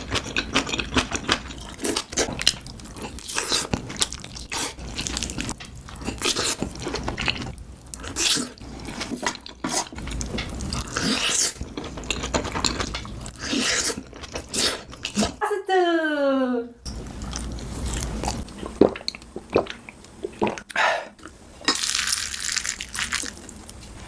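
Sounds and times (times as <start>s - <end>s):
wet chewing and smacking: 0.0s - 15.4s, 16.9s - 23.9s.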